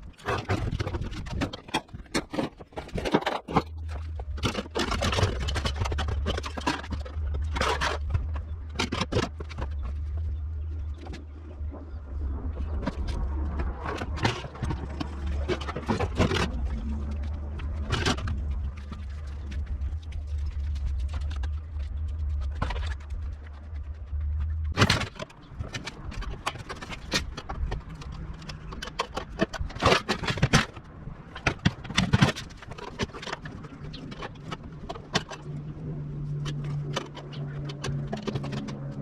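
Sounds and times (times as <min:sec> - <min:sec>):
steady low hum: 0:00.0 - 0:29.6.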